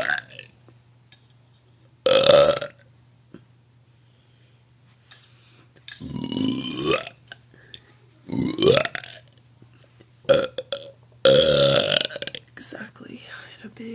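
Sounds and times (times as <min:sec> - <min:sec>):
woman burping: 0:06.0 - 0:07.1, 0:08.3 - 0:09.2.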